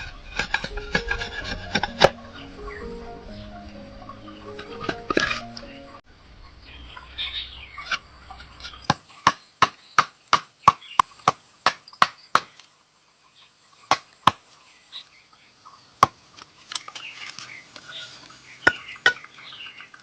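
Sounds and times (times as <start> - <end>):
hammer strikes: 0.4 - 5.7.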